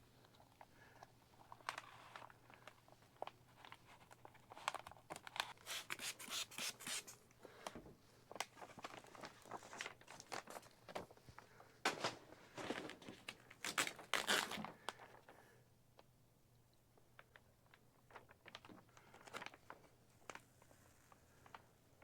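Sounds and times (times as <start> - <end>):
vinyl film crinkling and rustling: 0.2 - 5.6, 7.2 - 15.4, 17.2 - 22.0.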